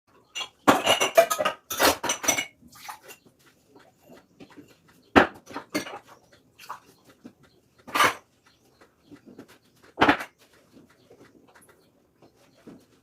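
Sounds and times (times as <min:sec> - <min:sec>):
dishes and cutlery clattering: 0:00.2 - 0:03.3, 0:04.0 - 0:06.8, 0:07.8 - 0:08.3, 0:10.0 - 0:10.4.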